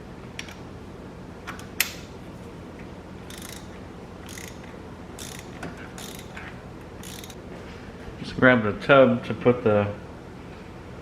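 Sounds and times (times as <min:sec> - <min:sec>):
ratchet clicking: 0:03.3 - 0:06.4, 0:07.0 - 0:07.4.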